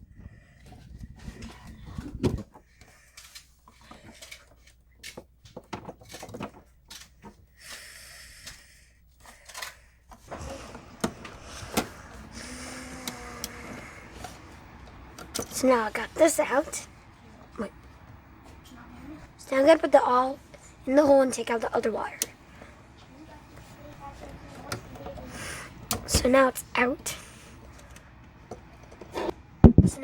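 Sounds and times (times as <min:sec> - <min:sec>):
awl and wires clicking on plastic: 0:00.6 - 0:16.6, 0:21.4 - 0:22.8, 0:23.5 - 0:26.4, 0:27.6 - 0:29.9.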